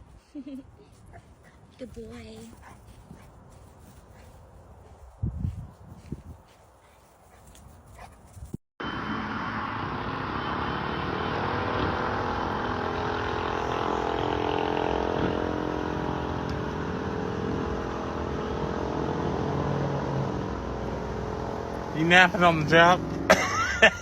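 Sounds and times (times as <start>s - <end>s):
engine running with hum: 7.9s - 24.0s.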